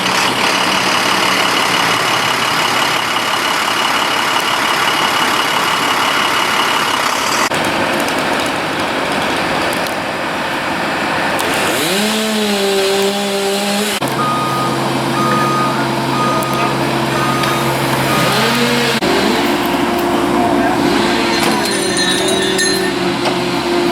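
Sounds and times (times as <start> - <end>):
heavy vehicle engines: 0.0 - 23.9
reversing alarm beeping: 14.0 - 23.9.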